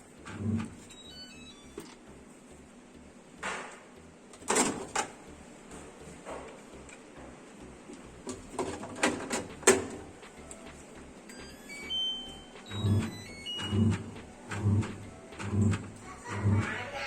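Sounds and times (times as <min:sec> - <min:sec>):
short electronic beeps: 0:00.9 - 0:01.8, 0:11.3 - 0:14.3
handling clicks and knocks: 0:08.3 - 0:10.3.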